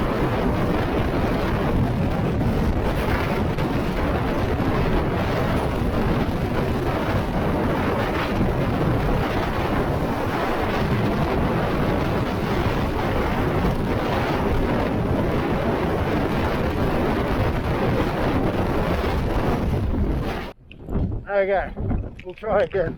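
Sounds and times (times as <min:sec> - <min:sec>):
strong wind buffeting microphone: 0:00.0 - 0:22.9.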